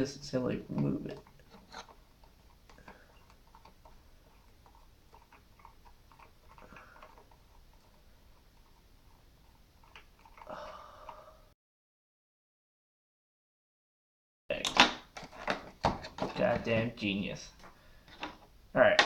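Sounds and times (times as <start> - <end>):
handling noise: 14.5 - 19.0.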